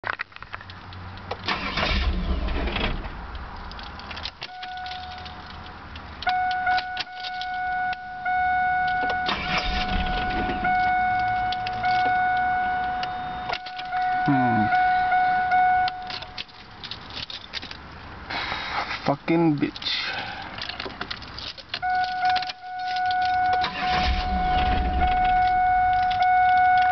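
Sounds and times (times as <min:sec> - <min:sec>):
car starter cranking: 0:01.4 - 0:05.6, 0:08.8 - 0:17.8, 0:19.8 - 0:26.9
high electronic warning tone: 0:06.3 - 0:16.4, 0:21.8 - 0:26.9.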